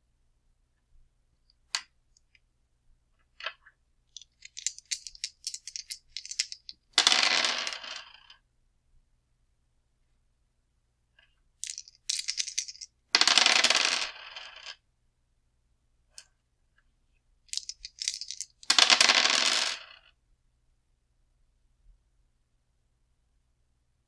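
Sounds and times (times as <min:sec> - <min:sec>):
dice rattling and clattering: 0:04.2 - 0:08.3, 0:11.6 - 0:14.7, 0:17.5 - 0:20.0.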